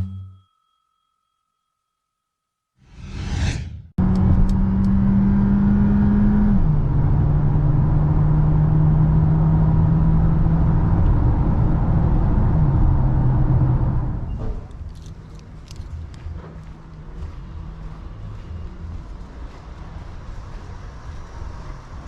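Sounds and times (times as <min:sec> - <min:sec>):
gear change pitch drop: 0:00.0 - 0:00.5.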